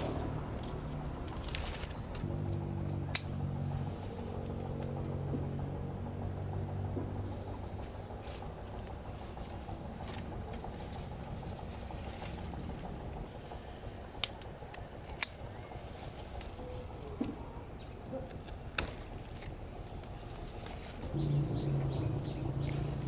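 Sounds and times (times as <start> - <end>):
low motor hum: 0.0 - 18.1, 18.8 - 23.0.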